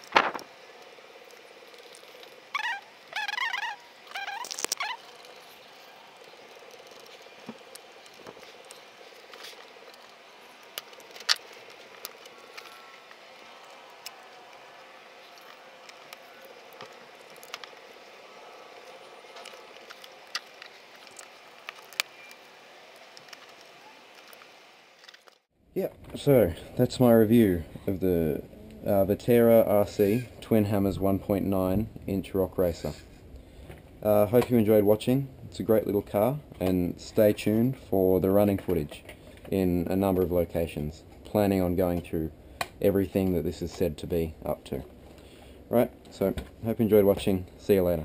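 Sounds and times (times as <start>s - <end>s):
plastic parts and screws clicking: 0.0s - 14.7s, 18.8s - 25.4s.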